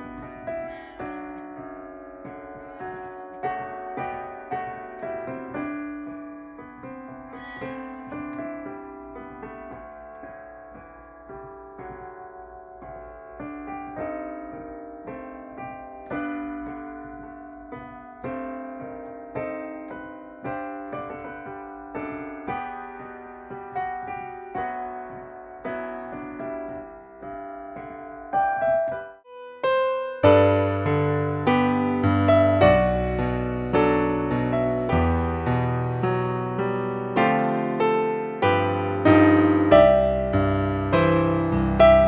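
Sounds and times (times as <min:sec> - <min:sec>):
electronic keyboard piano melody: 0:00.0 - 0:42.0.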